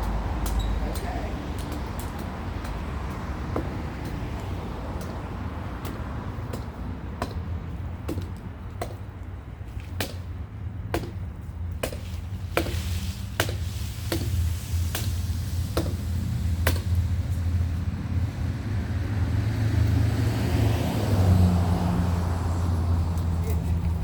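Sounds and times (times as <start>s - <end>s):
tree limbs being chopped: 0.0s - 17.6s.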